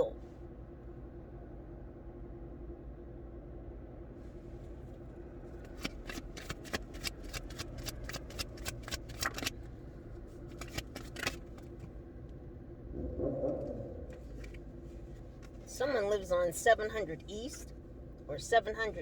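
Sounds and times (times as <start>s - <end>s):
cards being shuffled by hand: 5.5s - 12.0s.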